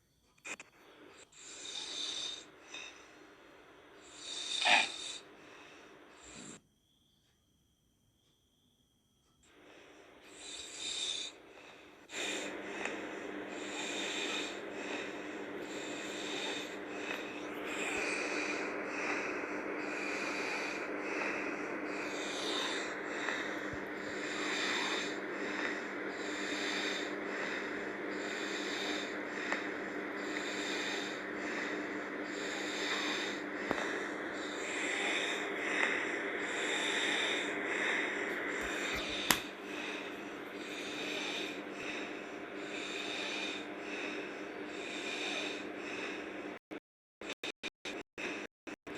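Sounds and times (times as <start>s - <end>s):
steady low hum: 0.0s - 46.6s
girl snoring: 0.5s - 6.6s, 9.6s - 46.6s.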